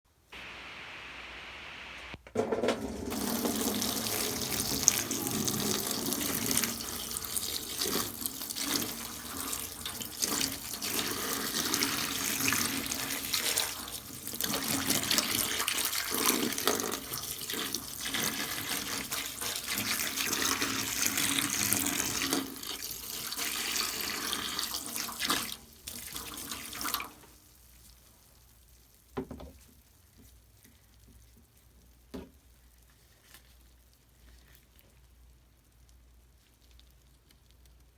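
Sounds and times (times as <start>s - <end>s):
tap water running into bath: 2.4s - 27.4s.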